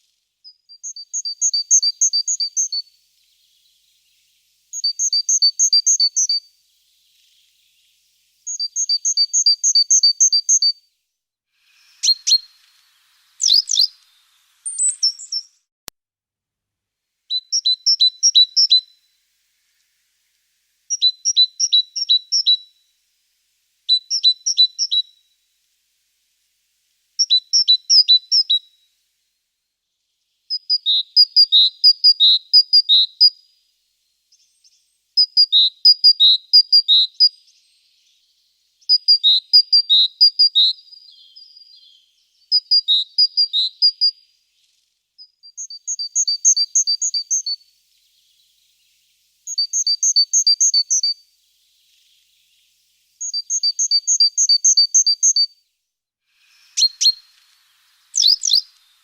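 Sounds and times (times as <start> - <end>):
songbird singing: 0.0 - 11.1, 11.7 - 15.7, 17.3 - 29.0, 29.8 - 55.8, 56.4 - 59.0
sharp bird calls: 13.4 - 15.6, 56.5 - 59.0.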